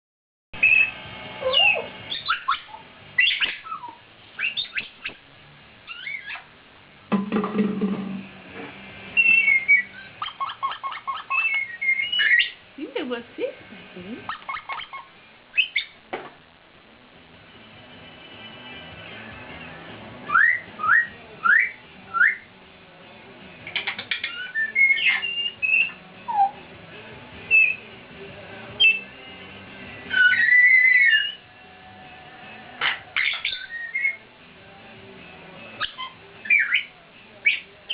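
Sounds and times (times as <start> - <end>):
parrots whistling and chirping: 0.6 - 5.2, 5.8 - 6.5, 9.1 - 12.6, 14.3 - 16.0, 20.2 - 22.5, 23.6 - 26.6, 27.5 - 27.9, 28.8 - 29.1, 30.0 - 31.4, 32.6 - 34.2, 35.7 - 37.9.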